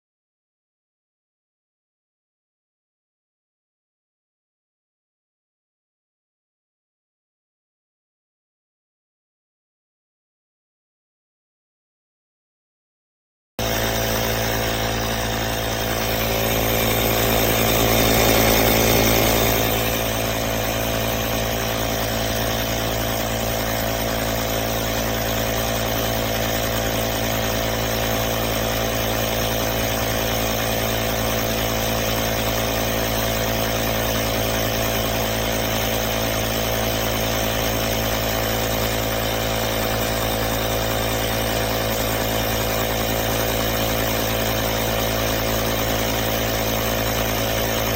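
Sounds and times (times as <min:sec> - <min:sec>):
tire inflator compressor running: 0:13.6 - 0:47.9.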